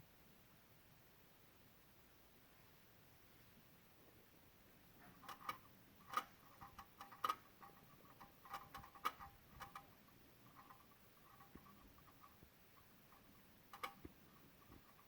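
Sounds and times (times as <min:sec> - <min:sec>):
faint irregular clicking: 0:05.0 - 0:15.0.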